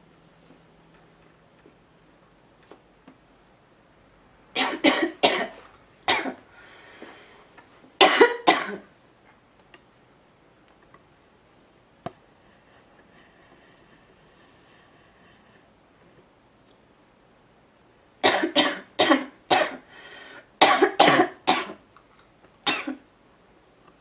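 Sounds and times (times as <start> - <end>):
woman coughing: 4.6 - 6.4, 8.0 - 8.9, 18.2 - 19.8, 20.6 - 21.8, 22.7 - 23.0
breath: 6.5 - 7.5, 19.8 - 20.5.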